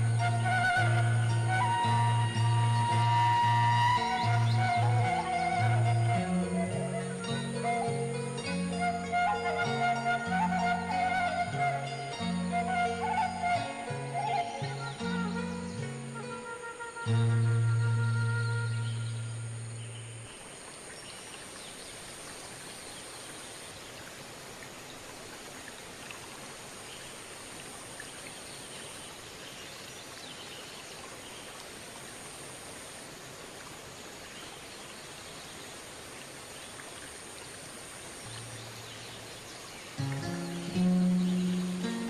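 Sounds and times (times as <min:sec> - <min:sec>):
background music: 0:00.0 - 0:19.2, 0:40.0 - 0:42.0
outdoor background hiss: 0:00.0 - 0:42.0.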